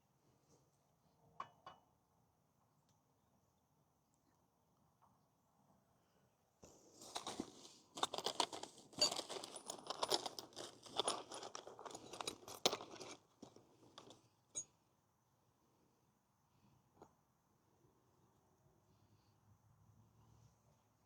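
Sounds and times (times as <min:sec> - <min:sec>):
objects rustling and clinking: 0:06.6 - 0:14.7.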